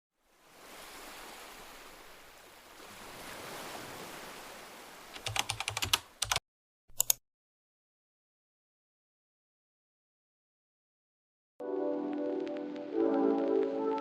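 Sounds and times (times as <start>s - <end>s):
computer keyboard typing: 5.2s - 7.2s
soft surf-like rush: 11.6s - 14.0s.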